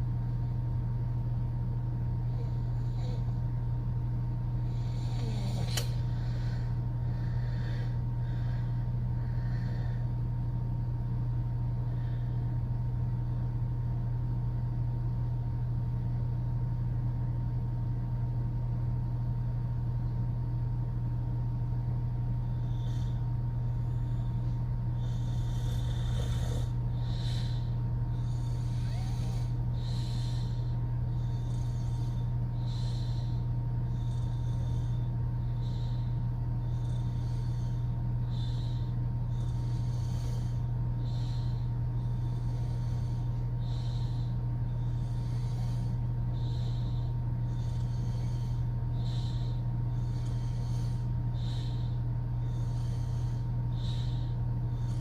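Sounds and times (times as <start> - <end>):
steady low hum: 0.0 - 55.0
woman snoring: 2.2 - 3.5, 4.6 - 10.1, 22.5 - 55.0.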